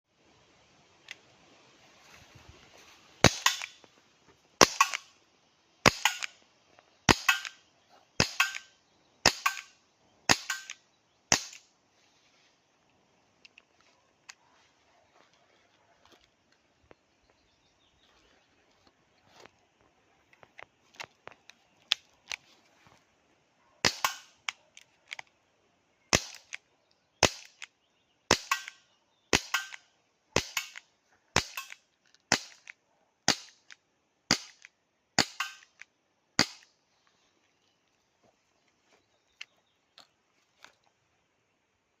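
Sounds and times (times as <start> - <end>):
airsoft revolver shots: 3.2 - 3.8, 4.6 - 5.1, 5.8 - 6.4, 7.1 - 7.6, 8.2 - 11.6, 23.8 - 24.6, 26.1 - 26.6, 27.2 - 27.7, 28.3 - 29.8, 30.4 - 35.8, 36.4 - 36.7.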